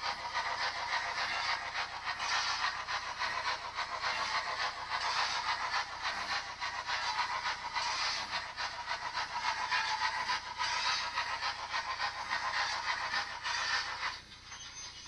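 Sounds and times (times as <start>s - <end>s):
model steam locomotive chuffs: 0.0s - 15.0s.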